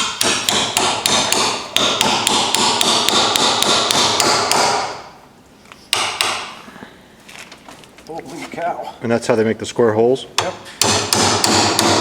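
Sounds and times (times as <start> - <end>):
hammer striking chisel into wood: 0.0 - 5.1, 5.9 - 6.6, 10.4 - 12.0.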